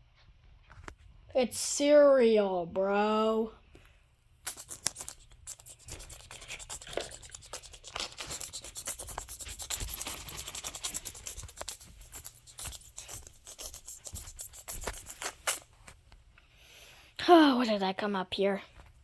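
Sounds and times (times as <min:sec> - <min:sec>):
toys handled scratching and clicking: 0:04.4 - 0:15.7.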